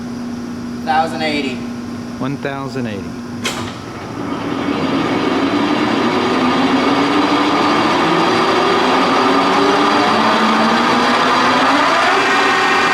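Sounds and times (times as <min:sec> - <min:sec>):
lathe gears humming: 0:03.2 - 0:12.9
lathe switch click: 0:03.4 - 0:04.0.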